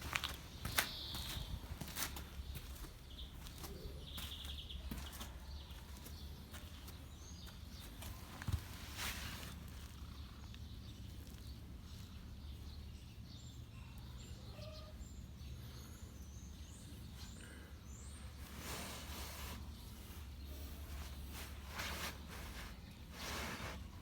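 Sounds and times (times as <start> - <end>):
small birds chirping: 0.0 - 24.0.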